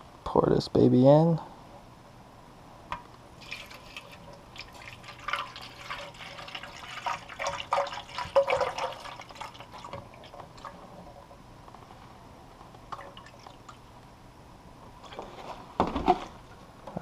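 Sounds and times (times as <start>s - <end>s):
water pouring into tank: 3.4s - 10.8s, 12.9s - 13.8s.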